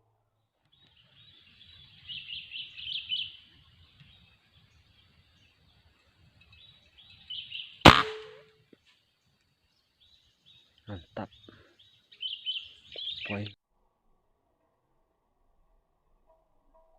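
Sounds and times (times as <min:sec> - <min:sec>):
birds chirping: 0:00.6 - 0:08.5, 0:09.6 - 0:13.6
air rifle shot: 0:07.9 - 0:08.5.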